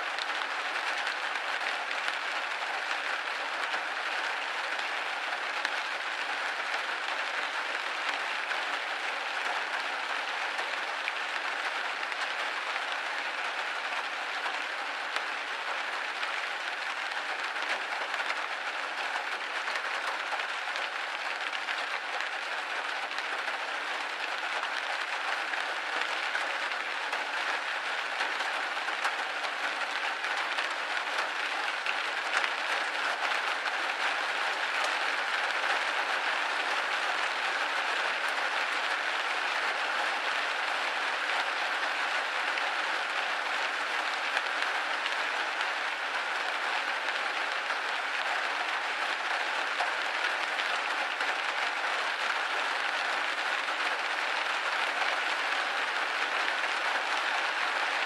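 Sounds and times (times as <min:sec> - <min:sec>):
rain pattering on window glass: 0:00.0 - 0:58.0.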